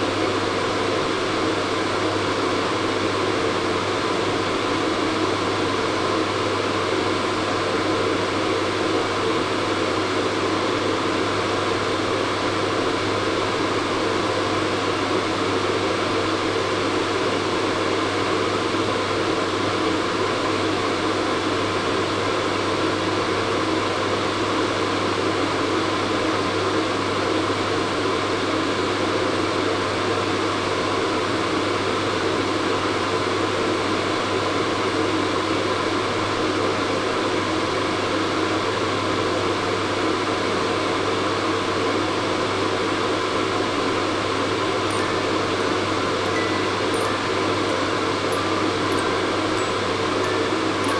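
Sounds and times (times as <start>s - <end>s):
hair dryer running: 44.8s - 50.9s.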